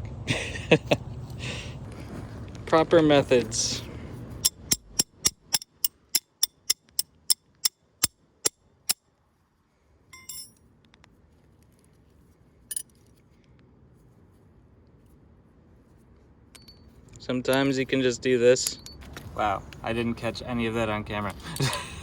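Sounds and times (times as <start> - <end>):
sharp metal-on-metal taps: 4.4 - 9.0, 10.2 - 10.6
metal clatter: 10.2 - 10.6, 12.7 - 13.0
metal clink: 10.2 - 10.6, 12.7 - 13.1, 16.5 - 17.7, 18.6 - 19.1.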